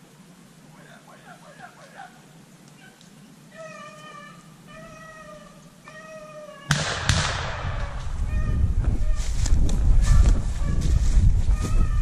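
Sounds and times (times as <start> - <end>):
hounds baying: 0.8 - 3.0.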